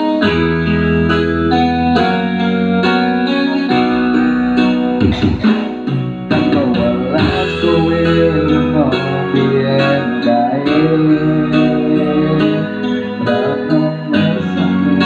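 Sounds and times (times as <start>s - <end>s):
guitar melody with sliding notes: 0.0s - 15.0s
keyboard chords: 0.0s - 15.0s
steady beat: 5.0s - 8.8s.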